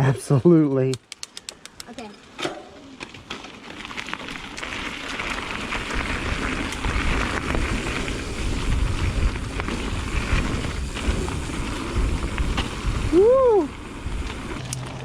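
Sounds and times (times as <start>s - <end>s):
bicycle tyres rolling on dirt: 1.2s - 15.0s
bicycle clicks: 3.0s - 15.0s
wind on microphone: 5.9s - 14.6s.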